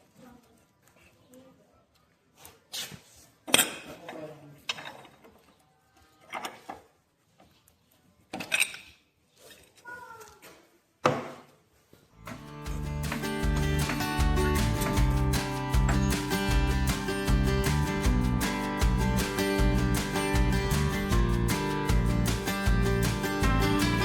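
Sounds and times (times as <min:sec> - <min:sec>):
music: 0:12.2 - 0:24.0.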